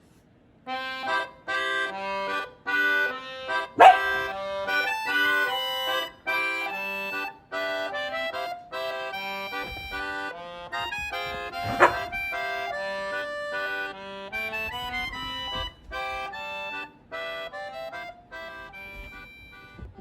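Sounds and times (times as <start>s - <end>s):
bouncy background music: 0.8s - 20.0s
dog bark: 3.8s - 4.3s, 11.6s - 12.1s.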